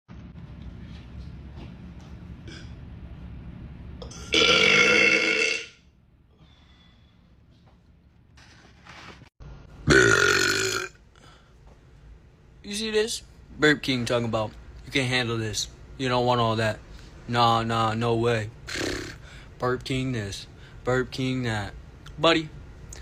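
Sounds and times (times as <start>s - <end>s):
man belching: 4.1s - 5.8s, 9.9s - 11.0s.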